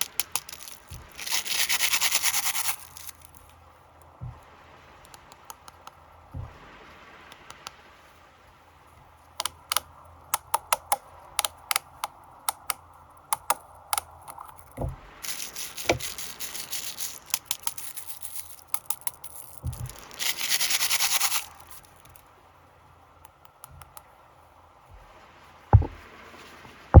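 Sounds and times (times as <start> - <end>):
packaging ripping: 0.0 - 3.2, 15.2 - 21.9
snack packaging crinkling: 0.0 - 3.3, 14.3 - 22.1.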